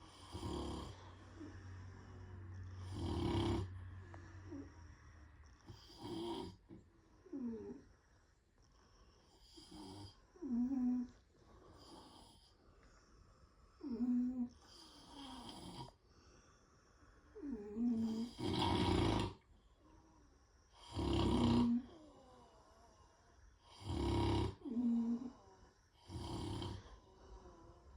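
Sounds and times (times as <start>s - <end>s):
pitched snorts: 0.0s - 1.1s, 2.8s - 3.8s, 5.7s - 6.6s, 17.9s - 19.4s, 20.8s - 21.9s, 23.7s - 25.4s, 26.0s - 27.0s
person snoring: 0.0s - 1.9s, 2.6s - 3.9s, 5.7s - 6.6s, 17.4s - 19.4s, 20.8s - 22.0s, 23.7s - 25.4s, 26.0s - 27.4s.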